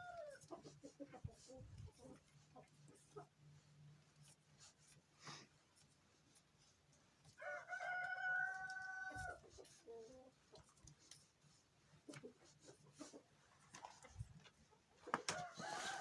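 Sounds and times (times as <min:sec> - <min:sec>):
rooster crowing: 0:07.4 - 0:09.4, 0:15.3 - 0:16.0.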